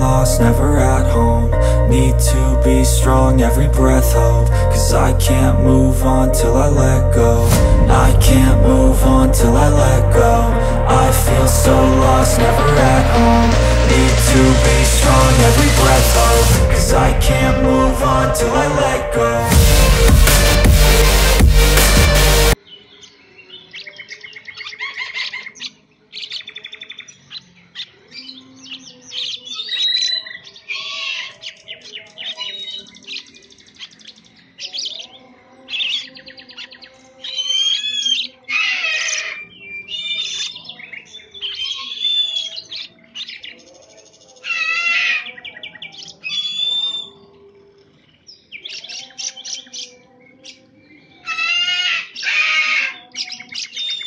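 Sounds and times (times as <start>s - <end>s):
songbird singing: 22.6s - 54.0s.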